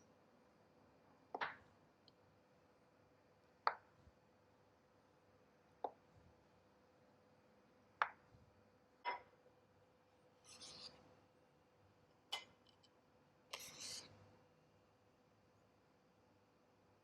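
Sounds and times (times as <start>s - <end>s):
utensils scraping: 10.5s - 11.0s, 13.6s - 14.1s.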